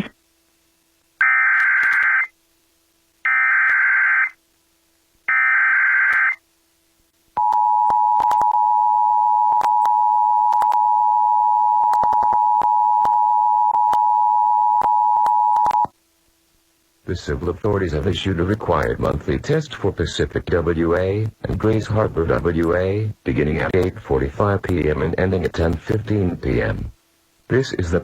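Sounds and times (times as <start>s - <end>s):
radio static crackles: 0.0s - 2.4s, 3.0s - 4.5s, 5.3s - 6.5s, 11.9s - 13.2s, 15.2s - 28.0s.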